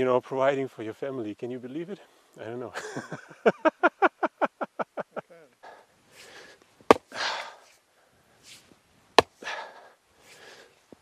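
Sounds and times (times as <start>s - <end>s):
laughter: 2.7s - 5.5s
hard breathing: 5.6s - 8.6s, 9.2s - 10.9s
fence post struck with blows: 6.9s - 7.1s, 9.2s - 9.4s.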